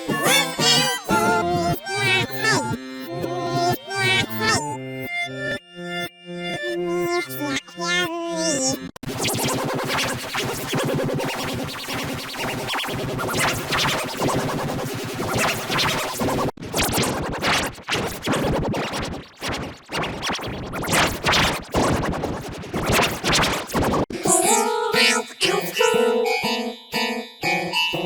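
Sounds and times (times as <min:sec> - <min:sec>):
effect-processed children's song: 0:00.0 - 0:08.8, 0:24.1 - 0:28.0
simple synth melody: 0:04.4 - 0:07.8, 0:25.8 - 0:28.0.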